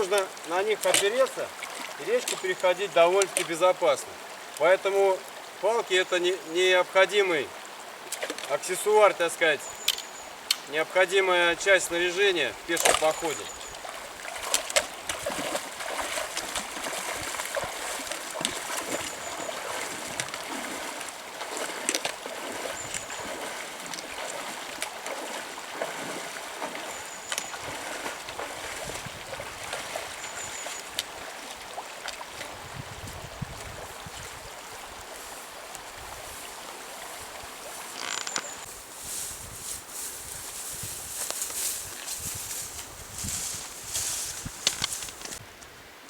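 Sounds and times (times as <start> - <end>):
splashes from wading: 0.0 - 3.6, 12.8 - 32.6
river water running over stones: 0.0 - 45.6.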